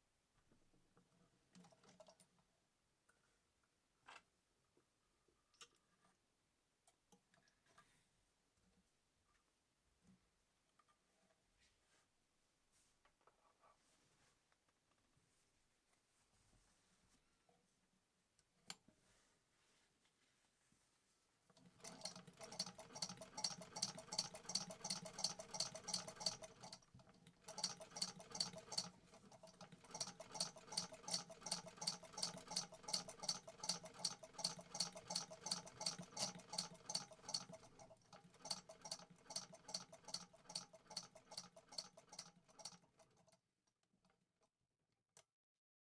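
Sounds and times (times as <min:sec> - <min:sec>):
sewing machine stitching: 0:21.6 - 0:43.4.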